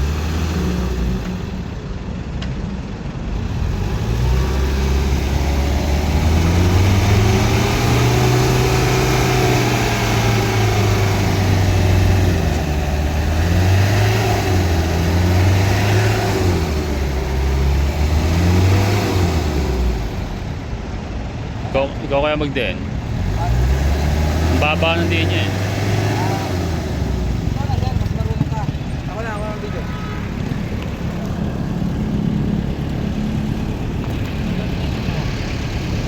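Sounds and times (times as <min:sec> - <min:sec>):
diesel engine revving: 0:00.0 - 0:36.0.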